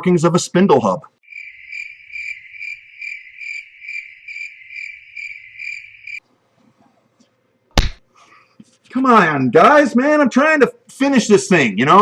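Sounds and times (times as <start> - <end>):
crickets chirping: 1.2 - 6.2.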